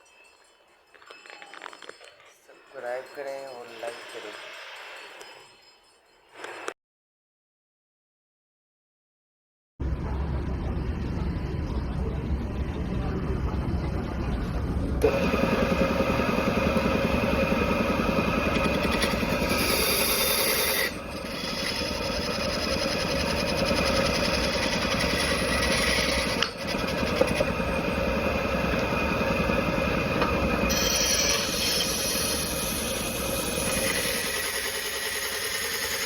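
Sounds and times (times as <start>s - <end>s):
machine humming: 15.0s - 36.0s.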